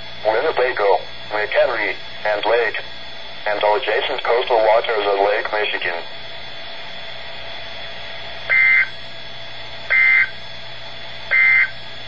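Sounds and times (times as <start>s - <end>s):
steady hum: 0.0s - 12.0s
warbling data bursts: 8.5s - 8.9s, 9.9s - 10.4s, 11.3s - 11.8s.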